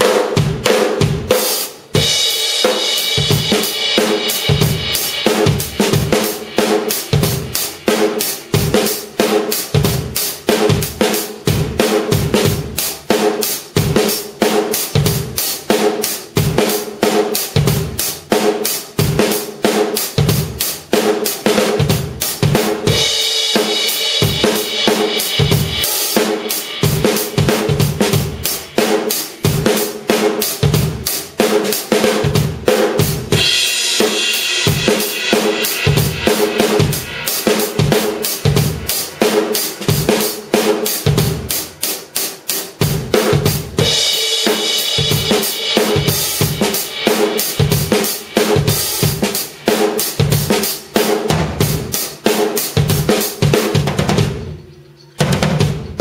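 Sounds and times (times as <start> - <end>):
drum kit groove: 0.0 - 56.0
crash cymbal ringing: 22.9 - 27.5, 33.4 - 40.5.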